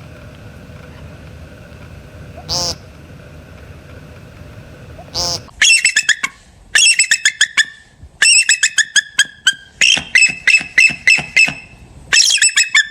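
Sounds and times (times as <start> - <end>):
bird calling high notes: 2.4 - 2.9, 5.0 - 12.9.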